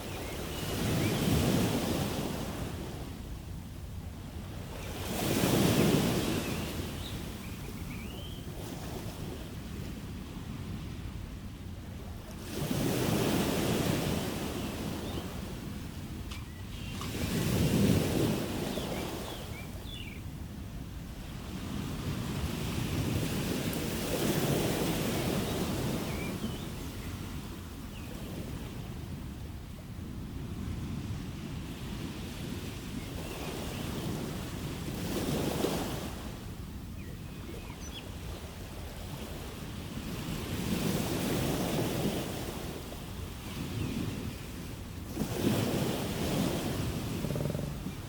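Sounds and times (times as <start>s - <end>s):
ocean waves on shore: 0.0s - 48.0s
ocean wave washing in and out: 45.1s - 48.0s.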